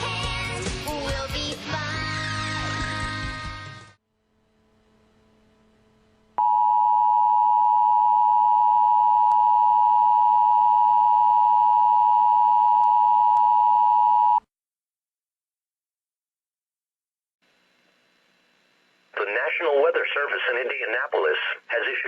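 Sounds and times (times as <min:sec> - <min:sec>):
loud steady two-tone beep: 0:06.4 - 0:14.4.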